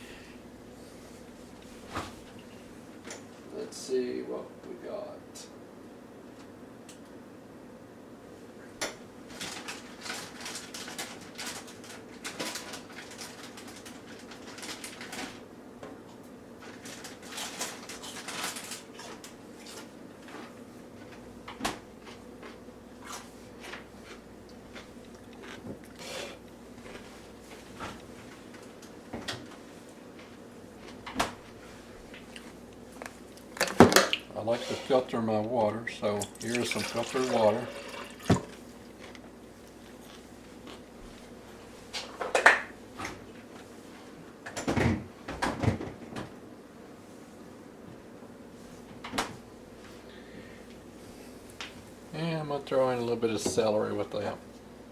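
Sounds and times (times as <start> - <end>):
faint steady hum: 0.0 - 9.6, 15.5 - 54.9
kitchen items clattering: 36.2 - 38.6.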